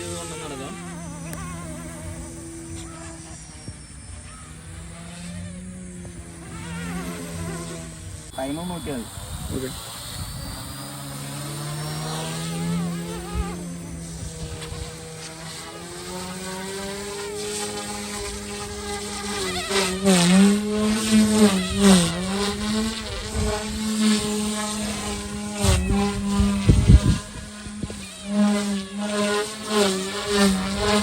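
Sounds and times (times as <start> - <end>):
rc helicopter rotors whining: 0.0 - 31.0.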